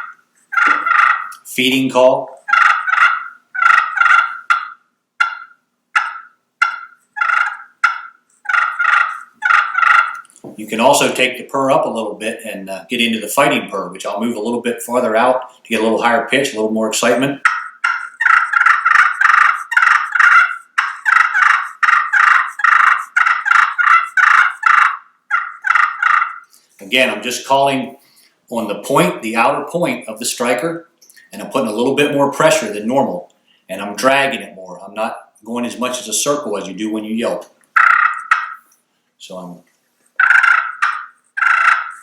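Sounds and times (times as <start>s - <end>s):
turkey call clucking: 0.0s - 1.5s, 2.3s - 10.4s, 17.1s - 27.2s, 37.7s - 38.8s, 40.1s - 42.0s.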